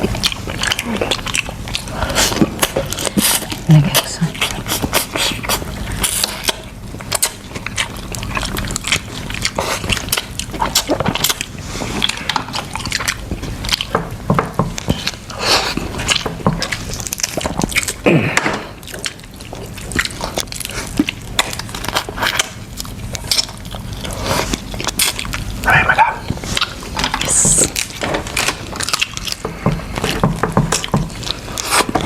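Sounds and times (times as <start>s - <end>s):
chewing: 0.0s - 32.0s.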